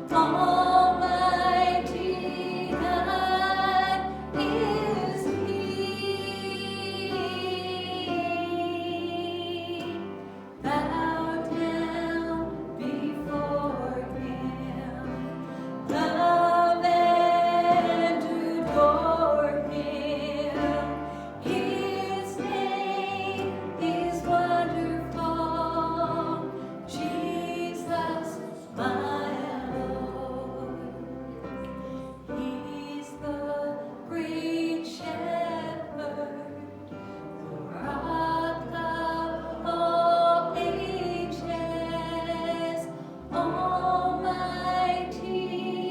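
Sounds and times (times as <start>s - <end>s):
group singing praise song: 0.0s - 45.9s
instrumental backing with bass: 0.0s - 45.9s.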